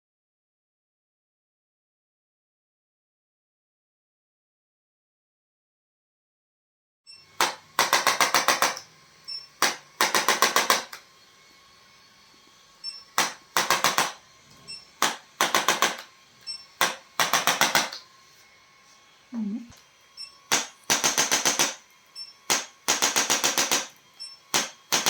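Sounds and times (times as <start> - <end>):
sharp rapid mechanical clicks: 7.4 - 8.9, 9.6 - 11.0, 13.2 - 14.2, 15.0 - 16.1, 16.8 - 18.0, 20.5 - 21.8, 22.5 - 25.0.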